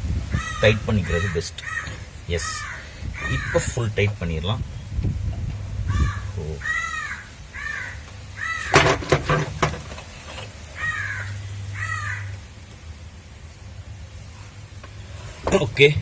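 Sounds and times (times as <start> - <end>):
crow cawing: 0.3 - 3.8, 5.9 - 9.0, 10.8 - 12.4
sharp clicks and knocks: 8.7 - 10.5.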